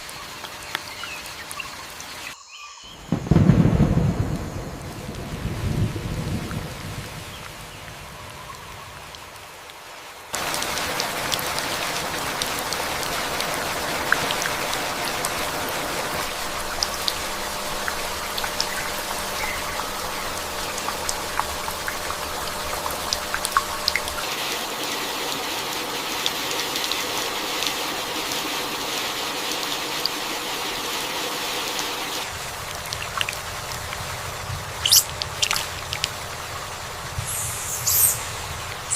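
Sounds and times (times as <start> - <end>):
heavy rain falling: 3.0 - 38.9
raindrops ticking: 3.2 - 24.4, 31.7 - 37.4.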